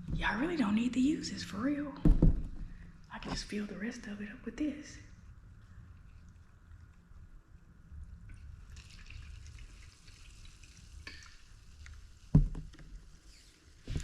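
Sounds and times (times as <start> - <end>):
soda fizzing while poured: 8.3 - 13.9.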